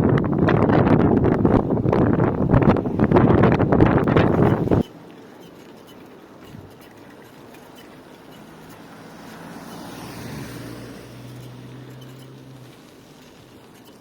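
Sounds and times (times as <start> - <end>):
vehicle engine passing: 6.5 - 14.0.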